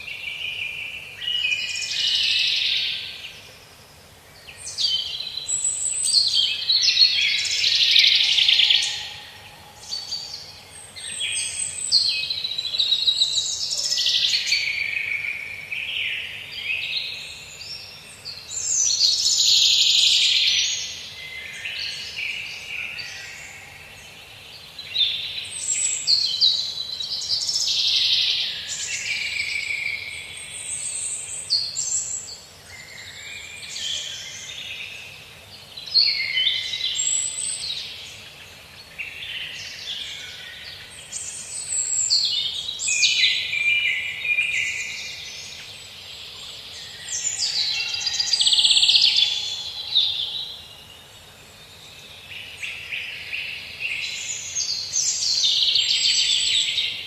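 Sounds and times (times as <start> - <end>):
birds singing and chirping: 0.0 - 57.0.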